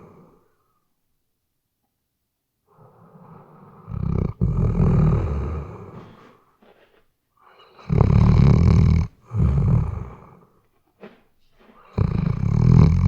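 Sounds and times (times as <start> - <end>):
dog snoring: 2.7 - 6.4, 7.6 - 10.5, 11.8 - 13.0.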